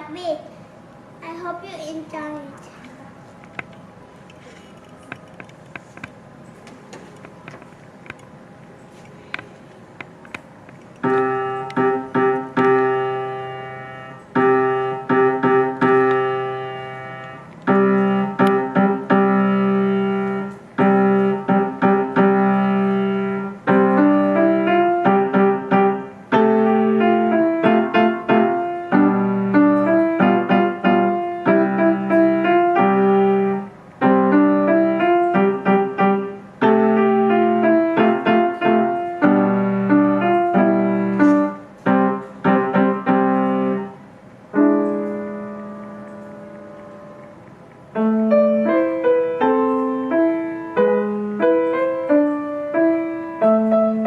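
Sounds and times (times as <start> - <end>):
solo piano piece: 11.0 - 54.0.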